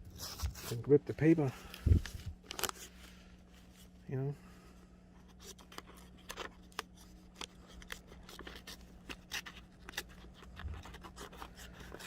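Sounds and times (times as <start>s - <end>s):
small scissors snipping paper: 5.4s - 12.0s.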